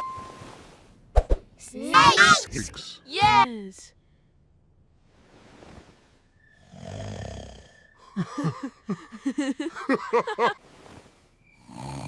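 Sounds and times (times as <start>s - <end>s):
squeaky warbling vocal sounds: 1.8s - 3.5s
cartoon snore: 6.7s - 7.8s, 11.6s - 12.0s.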